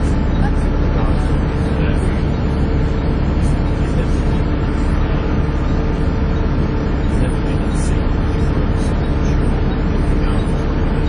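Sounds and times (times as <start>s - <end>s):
bus diesel engine whining and rumbling: 0.0s - 11.0s.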